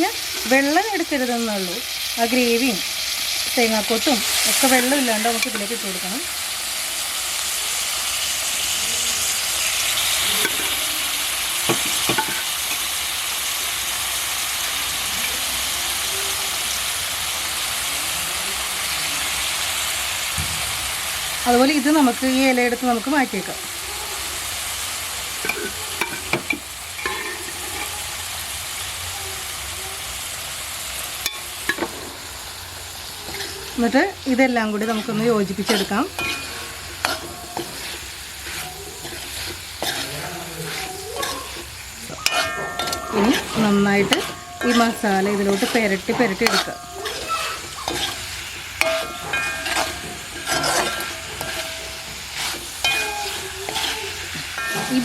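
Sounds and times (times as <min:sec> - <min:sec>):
food sizzling in a pan: 0:00.0 - 0:55.0
spoon clinking and scraping pan: 0:03.8 - 0:06.0, 0:09.7 - 0:11.0, 0:11.6 - 0:13.0, 0:25.4 - 0:28.1, 0:31.2 - 0:32.3, 0:33.0 - 0:55.0.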